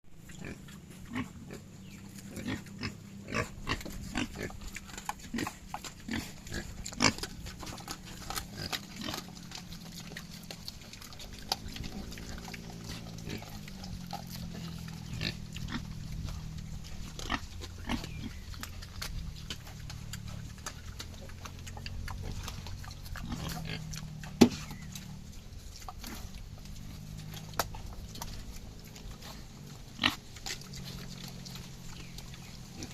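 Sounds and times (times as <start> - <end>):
pig chewing and smacking: 0.2 - 32.9
pig grunting: 0.2 - 32.9.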